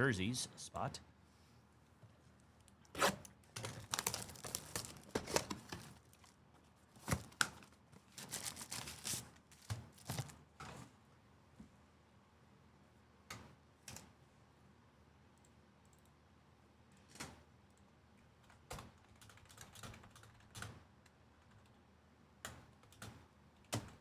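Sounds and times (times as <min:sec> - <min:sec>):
pack wrappers tearing: 0:03.0 - 0:06.4, 0:07.3 - 0:10.3
cards rustling: 0:03.6 - 0:06.3, 0:07.1 - 0:10.4.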